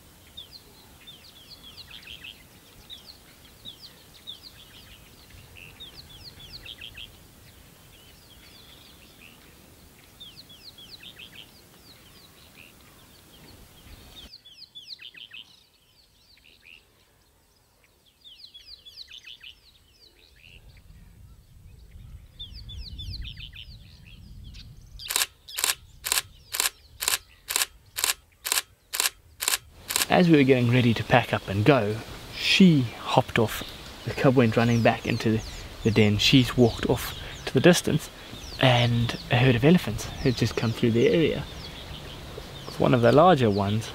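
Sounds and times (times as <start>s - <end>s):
bird chirping: 21.9s - 43.9s
camera shutter clicks: 25.0s - 30.2s.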